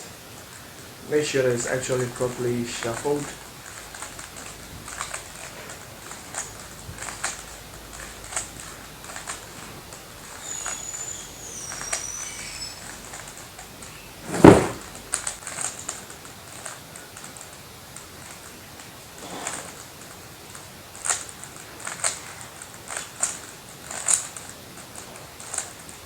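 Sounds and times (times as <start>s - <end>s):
loud thump: 14.2s - 14.9s.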